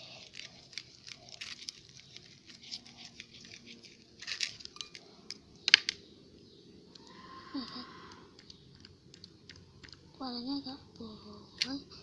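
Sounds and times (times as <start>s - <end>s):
slime crackling and popping: 0.0s - 6.0s.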